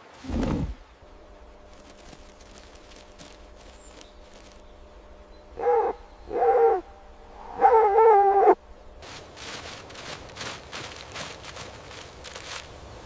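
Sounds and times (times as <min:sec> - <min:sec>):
animal calling: 0:05.3 - 0:08.6.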